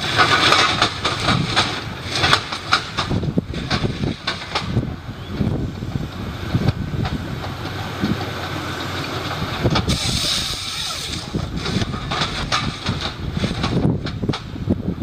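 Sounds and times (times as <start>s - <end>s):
knocks and clatter: 0.0s - 5.0s, 10.9s - 14.6s
heavy wood-cutting machinery rumble: 0.0s - 15.0s
brief hiss: 9.9s - 11.3s.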